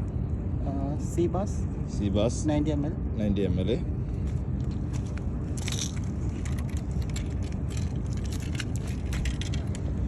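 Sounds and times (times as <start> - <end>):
steady low rumble: 0.0 - 10.0
light clicks and crackles: 4.2 - 10.0.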